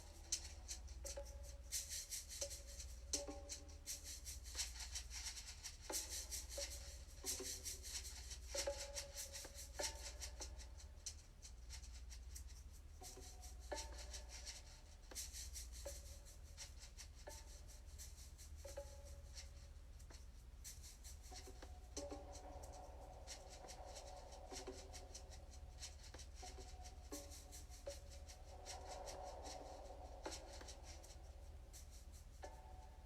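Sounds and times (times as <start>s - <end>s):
rattling shaker percussion: 0.0s - 33.0s
steady low hum: 17.2s - 33.0s.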